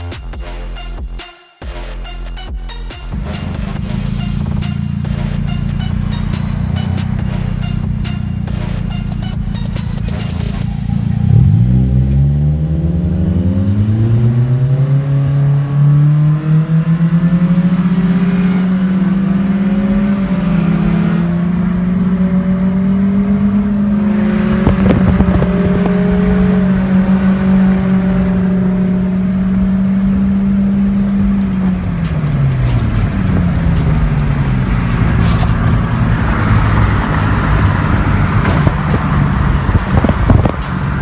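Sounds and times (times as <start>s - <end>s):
car engine pulling away: 2.7s - 41.0s.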